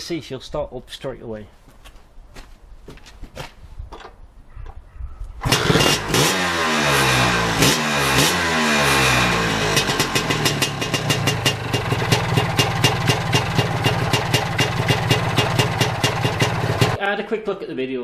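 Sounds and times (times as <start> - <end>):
scooter engine revving and idling: 5.4 - 17.0.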